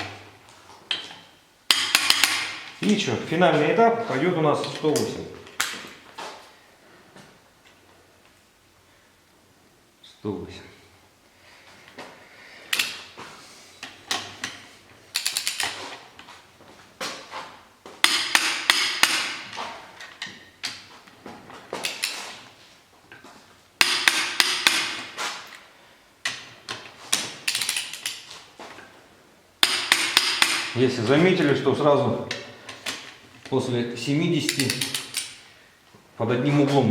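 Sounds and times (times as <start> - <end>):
torque wrench clicking: 15.1 - 15.8, 34.4 - 35.4.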